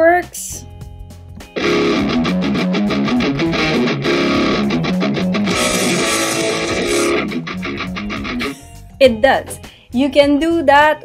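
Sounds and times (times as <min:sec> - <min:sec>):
guitar-led music over speakers: 0:01.4 - 0:08.9.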